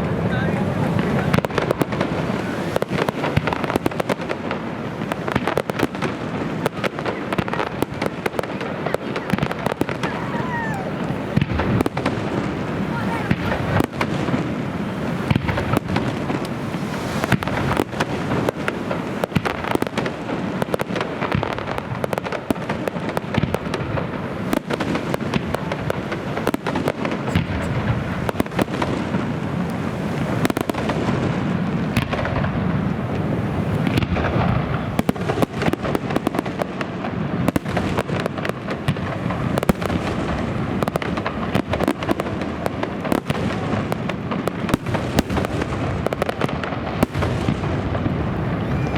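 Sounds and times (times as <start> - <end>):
fireworks bangs and crackles: 0.0 - 48.9.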